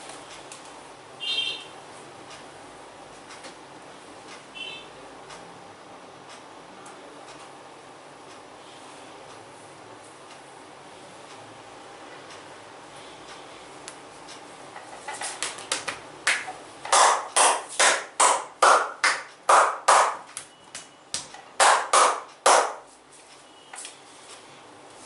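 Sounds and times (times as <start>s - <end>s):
hands slapping on body: 15.3s - 22.8s.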